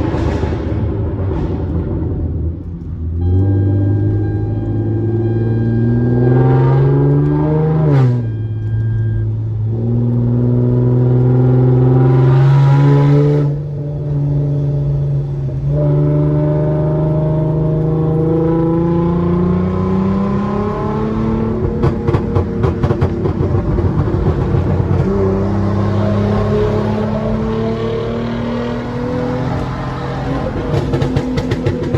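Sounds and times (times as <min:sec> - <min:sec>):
exhaust crackles and pops: 0:00.0 - 0:14.8, 0:19.3 - 0:26.0, 0:29.5 - 0:31.9
car engine accelerating hard: 0:00.0 - 0:31.9.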